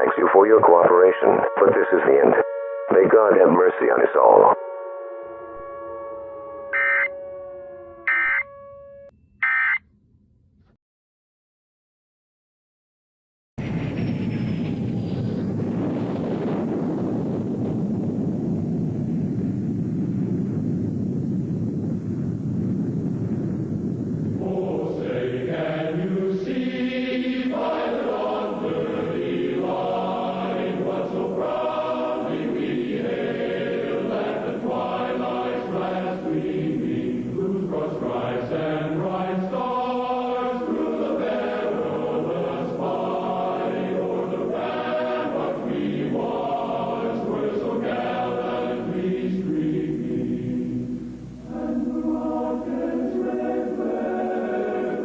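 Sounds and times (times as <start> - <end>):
choir singing held chords: 0.0 - 9.1, 24.2 - 55.0.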